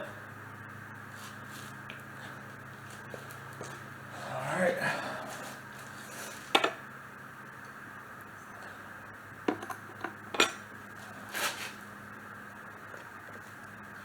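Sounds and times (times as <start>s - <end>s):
metal tools and parts clinking: 9.5s - 10.6s.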